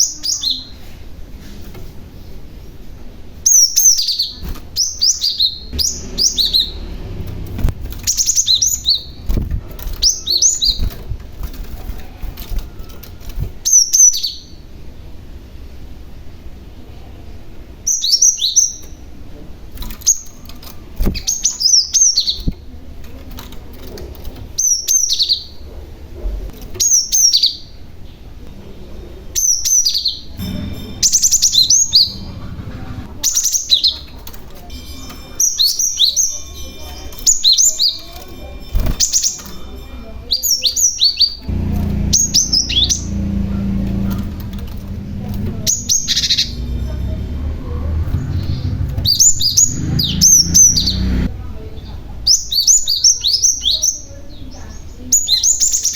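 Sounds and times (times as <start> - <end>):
bird chirping: 0.0 - 0.8, 3.4 - 11.6, 29.4 - 34.1, 34.7 - 55.9
low steady hum: 30.3 - 33.3, 41.4 - 52.3.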